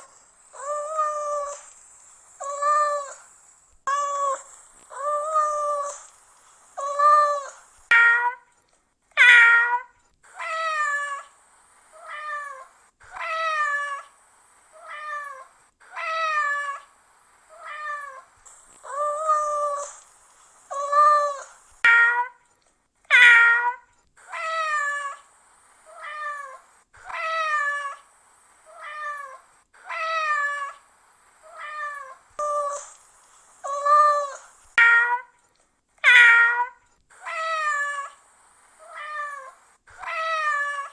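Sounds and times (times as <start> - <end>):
faint steady hiss: 0.0 - 40.9
cat meowing: 0.1 - 1.8, 2.4 - 6.1, 6.8 - 8.5, 9.2 - 16.9, 17.5 - 20.0, 20.7 - 22.5, 23.1 - 33.0, 33.6 - 35.4, 36.0 - 40.9.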